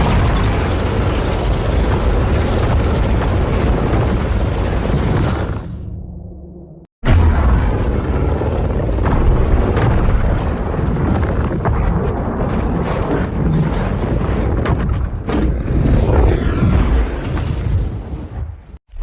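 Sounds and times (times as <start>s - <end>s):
sharp crashes: 0.0s - 2.1s.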